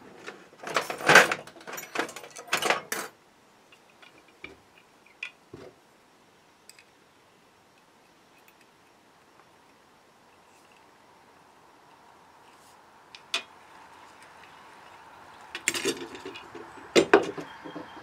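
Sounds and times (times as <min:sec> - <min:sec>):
metal tools clattering: 0:00.6 - 0:03.1, 0:15.6 - 0:17.5.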